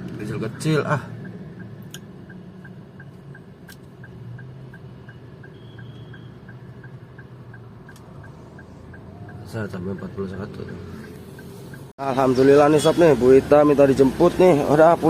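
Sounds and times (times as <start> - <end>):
car indicator ticking: 0.5 - 11.9
faint short beep: 5.4 - 6.5.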